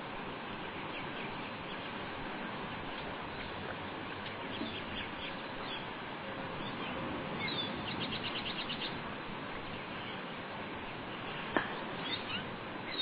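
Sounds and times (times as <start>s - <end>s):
steady hiss: 0.0s - 13.0s
bird chirping: 4.2s - 5.9s, 6.6s - 9.0s, 11.8s - 13.0s.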